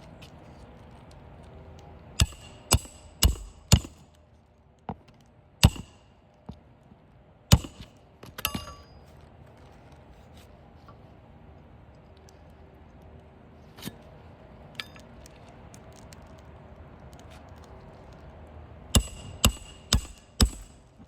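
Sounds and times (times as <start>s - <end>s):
nails being hammered: 2.2s - 4.1s, 5.6s - 6.1s, 7.5s - 8.8s, 19.0s - 21.0s.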